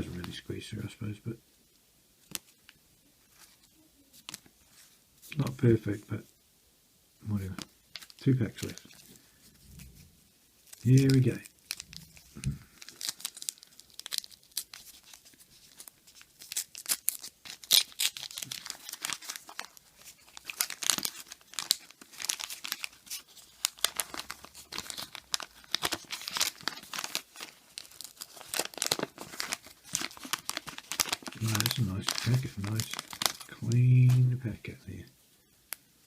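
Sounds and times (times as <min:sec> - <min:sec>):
paper wrapper tearing and crinkling: 0:07.9 - 0:09.9, 0:10.6 - 0:34.3.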